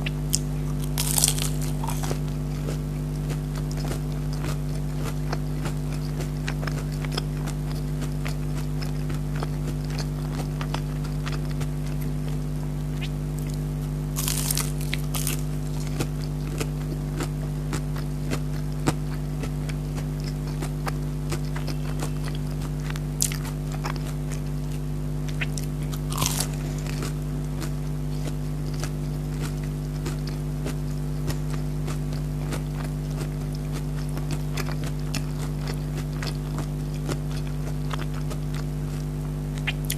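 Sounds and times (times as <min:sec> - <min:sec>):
low hum: 0:00.0 - 0:08.4, 0:09.8 - 0:31.8
chewing and crunching: 0:00.0 - 0:39.9.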